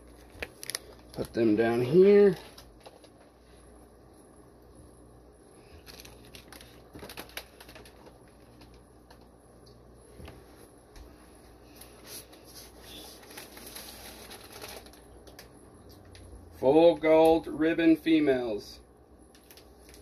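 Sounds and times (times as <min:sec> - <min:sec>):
plastic bags crinkling: 0:00.0 - 0:03.3, 0:05.8 - 0:09.3, 0:12.2 - 0:16.2, 0:19.3 - 0:20.0.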